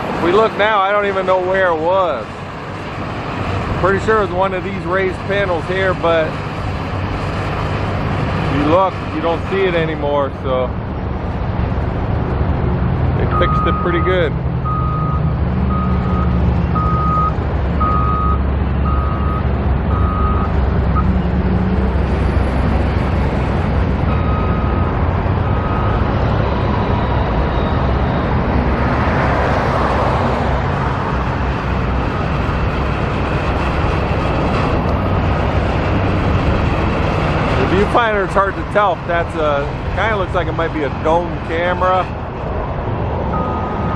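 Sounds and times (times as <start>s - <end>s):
engine low rumble: 0.0s - 43.9s
reversing alarm beeping: 13.3s - 21.2s, 24.1s - 25.0s, 25.6s - 26.1s, 43.3s - 43.9s.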